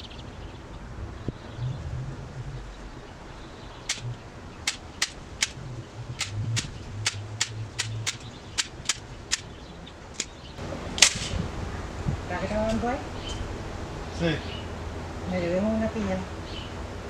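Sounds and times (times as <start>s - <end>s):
sharp short clicks: 3.9s - 5.6s, 6.2s - 9.5s.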